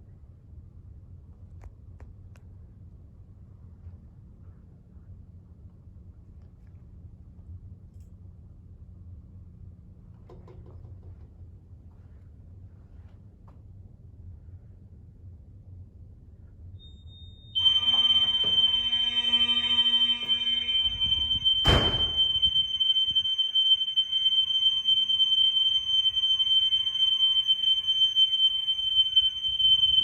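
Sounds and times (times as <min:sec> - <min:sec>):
mechanical fire alarm horns: 0:17.6 - 0:30.0
sharp knock: 0:21.5 - 0:22.5.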